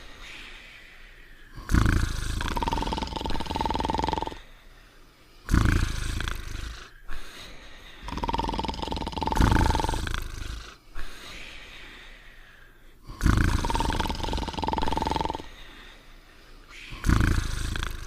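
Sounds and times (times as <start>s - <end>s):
cartoon dog snoring: 1.5s - 4.5s, 5.4s - 7.0s, 8.0s - 10.8s, 13.0s - 15.6s, 16.7s - 18.0s.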